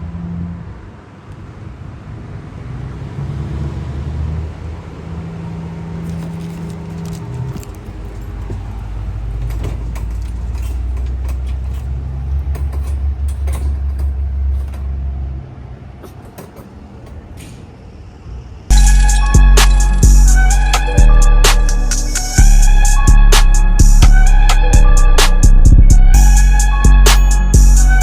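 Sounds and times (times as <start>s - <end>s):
car engine humming: 4.5s - 17.6s
sharp clicks and rattles: 6.0s - 15.0s, 16.0s - 17.5s.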